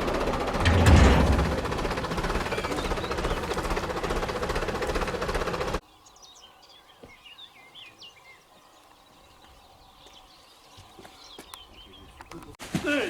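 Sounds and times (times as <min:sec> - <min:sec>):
pulsing mechanical noise: 0:00.0 - 0:05.8
small birds chirping: 0:02.4 - 0:04.2, 0:05.8 - 0:12.6.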